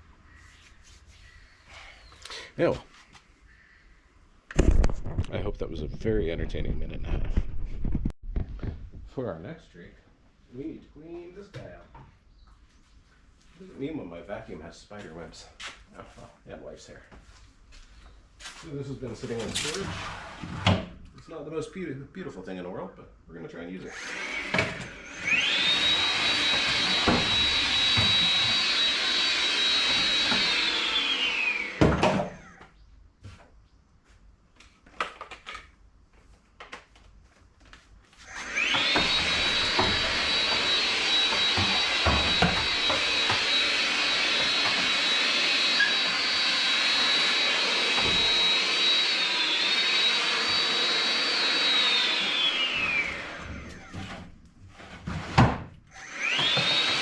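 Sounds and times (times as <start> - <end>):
vacuum cleaner motor whine: 23.9 - 32.6, 38.2 - 54.2, 55.9 - 57.0.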